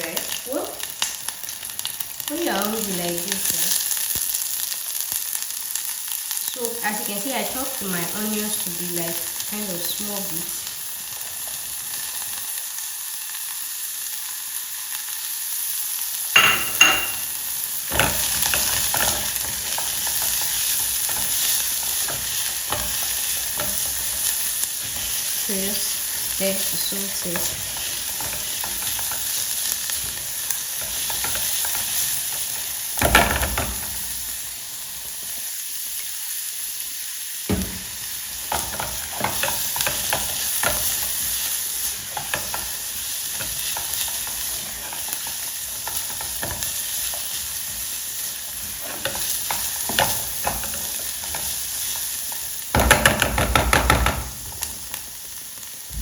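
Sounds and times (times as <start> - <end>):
onions sizzling in oil: 0.0 - 56.0
utensil scraping and knocking pot: 16.4 - 17.3.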